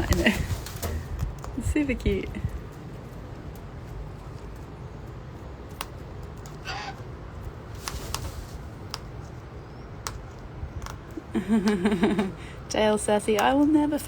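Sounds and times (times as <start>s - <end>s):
beaks clicking and tapping nuts: 0.8s - 14.0s
cockatoo squawk: 6.6s - 7.0s.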